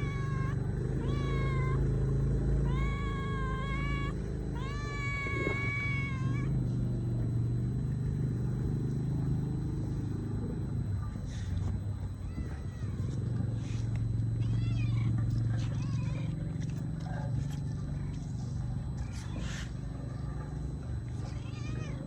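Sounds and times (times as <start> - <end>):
cat meowing: 0.0 - 1.9, 2.6 - 6.6, 14.4 - 16.4, 21.3 - 22.0
steady low rumble: 0.0 - 22.0.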